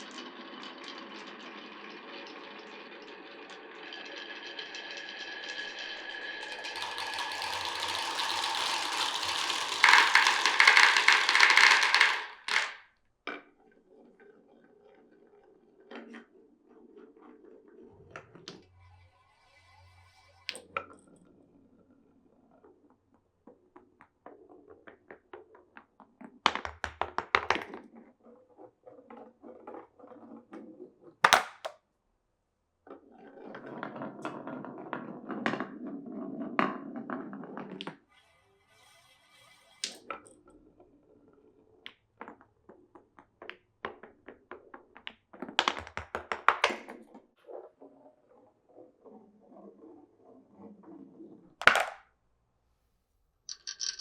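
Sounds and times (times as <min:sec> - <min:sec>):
marbles clacking in wooden run: 0:00.1 - 0:13.4, 0:31.2 - 0:31.8, 0:39.8 - 0:40.4, 0:41.8 - 0:47.0, 0:51.6 - 0:52.0, 0:53.5 - 0:54.0
rolling rumble: 0:06.0 - 0:12.8.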